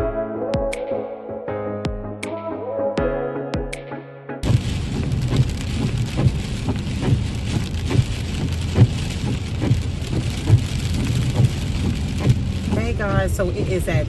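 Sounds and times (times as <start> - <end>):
rain falling: 4.4 - 14.0
steady low rumble: 4.4 - 14.0.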